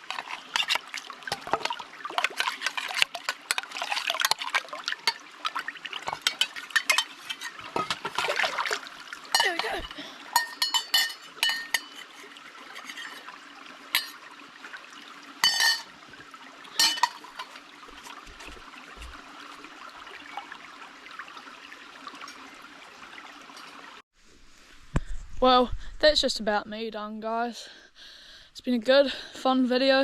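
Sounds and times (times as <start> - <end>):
pots and utensils clinking: 0.0 - 5.3, 6.0 - 8.4, 9.3 - 13.3, 13.9 - 14.2, 15.4 - 16.0, 16.7 - 19.1
water sloshing and trickling: 0.0 - 25.3.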